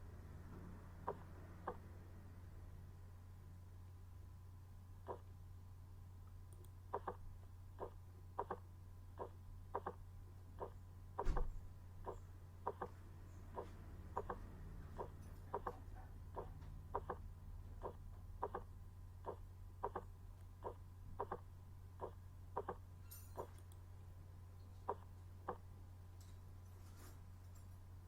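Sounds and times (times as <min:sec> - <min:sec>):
steady low hum: 0:00.0 - 0:28.0
heartbeat thuds: 0:06.9 - 0:10.0, 0:10.6 - 0:22.8.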